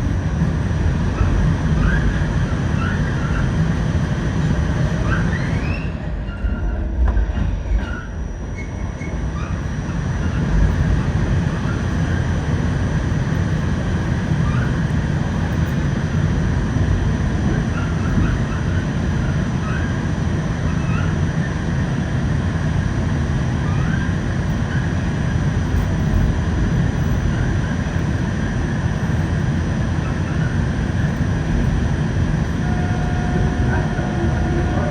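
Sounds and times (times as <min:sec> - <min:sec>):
train wheels and motors rumbling: 0:00.0 - 0:34.9
rising wheel squeals: 0:05.0 - 0:10.4.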